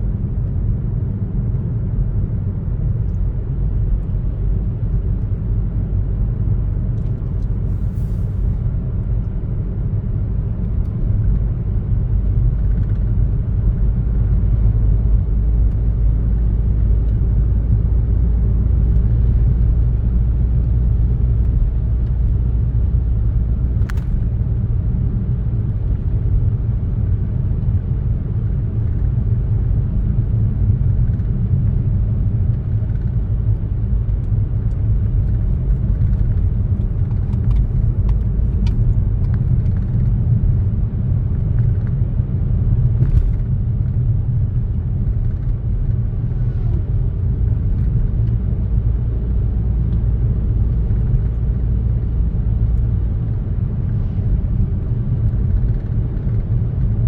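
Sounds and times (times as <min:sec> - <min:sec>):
car driving rumble: 0:00.0 - 0:57.0.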